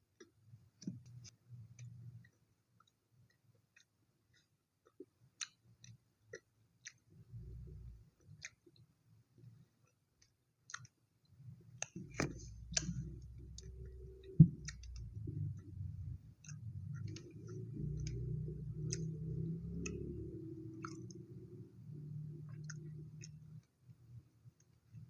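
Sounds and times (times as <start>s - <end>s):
chewing with wet mouth clicks: 1.0s - 7.1s, 8.2s - 8.9s, 9.8s - 11.0s, 11.8s - 23.8s.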